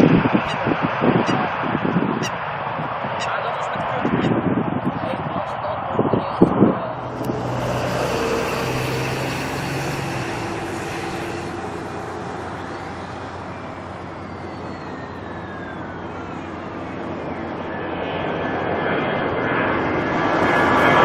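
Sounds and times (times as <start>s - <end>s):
jet engines passing: 0.0s - 21.0s.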